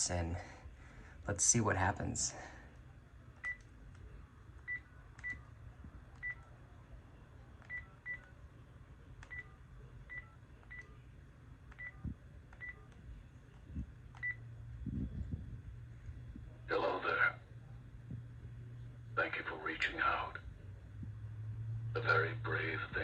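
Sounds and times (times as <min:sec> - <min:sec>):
faint low hum: 0:00.0 - 0:23.0
phone keypad beeps: 0:11.8 - 0:12.0.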